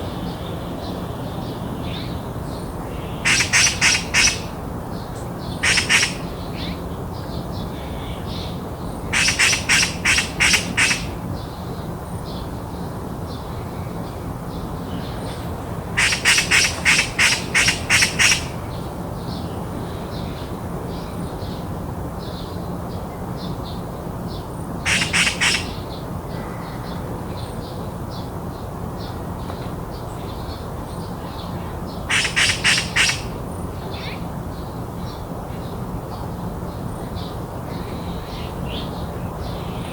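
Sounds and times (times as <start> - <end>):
magpie chattering: 3.2 - 4.6, 5.5 - 6.8, 9.1 - 11.2, 16.0 - 18.7, 24.9 - 25.8, 32.0 - 33.4.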